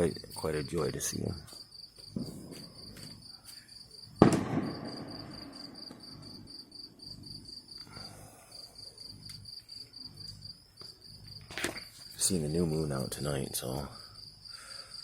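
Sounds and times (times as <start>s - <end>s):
insects chirping: 0.0s - 15.0s
firework bang: 2.2s - 2.9s, 4.2s - 6.2s.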